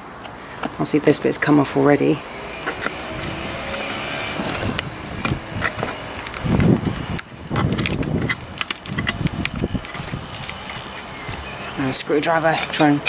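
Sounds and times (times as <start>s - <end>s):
cover rubbing on foam: 2.6s - 12.9s.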